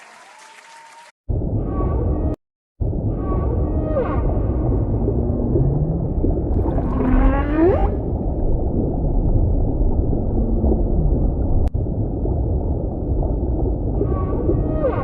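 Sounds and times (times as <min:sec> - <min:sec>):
whale call: 0:03.1 - 0:05.9, 0:06.7 - 0:08.1, 0:14.0 - 0:15.0
underwater water rush: 0:05.1 - 0:15.0
whale moans: 0:06.8 - 0:08.1, 0:14.0 - 0:15.0.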